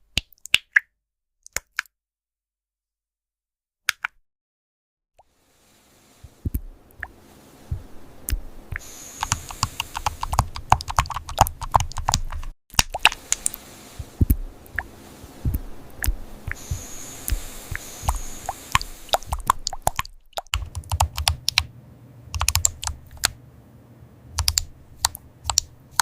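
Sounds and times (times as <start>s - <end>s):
keyboard typing clicks: 8.3s - 13.6s, 15.5s - 21.7s, 22.3s - 23.4s, 24.4s - 25.7s.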